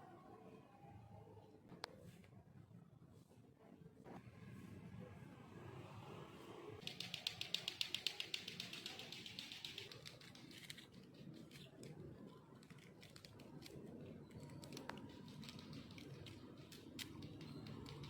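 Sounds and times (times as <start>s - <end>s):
rapid light sharp ticks: 6.8s - 18.0s
scattered clicks: 6.8s - 18.0s.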